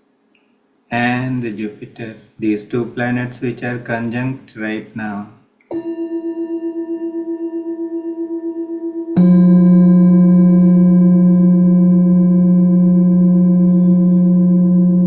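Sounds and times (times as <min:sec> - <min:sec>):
low struck tone: 0:05.7 - 0:15.0
ringing metallic tone: 0:05.7 - 0:15.0.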